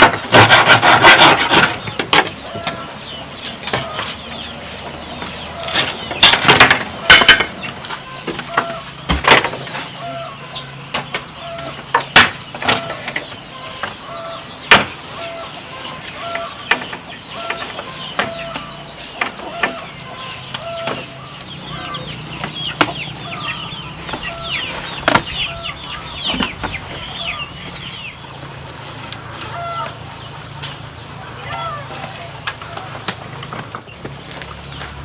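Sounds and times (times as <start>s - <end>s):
chickens clucking: 0.0s - 35.0s
sharp knocks: 11.9s - 14.0s, 14.7s - 15.0s, 24.0s - 25.5s.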